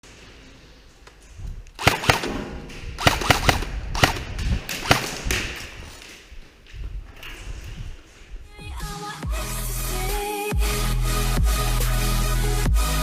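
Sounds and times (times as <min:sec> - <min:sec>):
airsoft gun single shots: 0:01.8 - 0:05.6.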